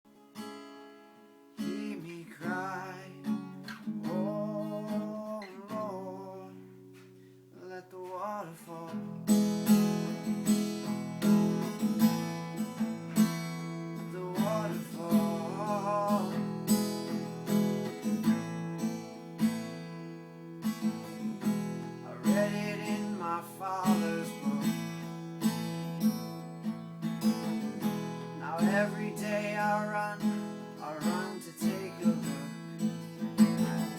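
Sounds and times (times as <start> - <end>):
acoustic guitar strumming: 0.1 - 33.9
person singing: 1.6 - 3.4, 4.0 - 6.6, 7.6 - 9.1, 14.0 - 16.6, 22.0 - 25.1, 27.5 - 33.9.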